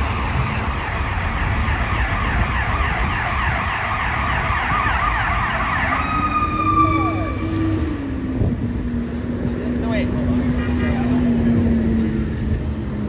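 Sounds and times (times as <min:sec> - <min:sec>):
electronic siren yelp: 0:00.0 - 0:07.8
truck engine rumble: 0:00.0 - 0:13.0.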